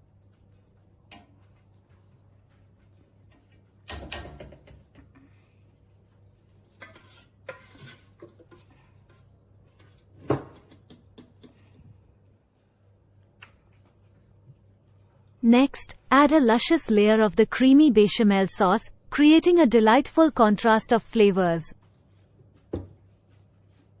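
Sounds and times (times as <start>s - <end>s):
utensils scraping dishes: 6.8s - 8.7s.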